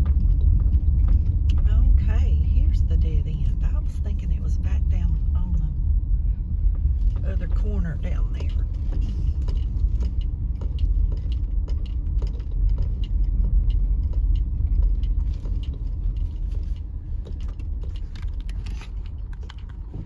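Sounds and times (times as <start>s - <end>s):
car engine and tyre rumble: 0.0s - 20.0s
light clicks and rattles: 6.7s - 20.0s.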